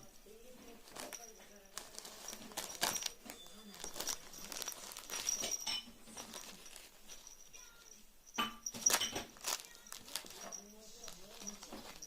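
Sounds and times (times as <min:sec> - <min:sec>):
kitten tapping and scuffling: 0:08.4 - 0:12.0.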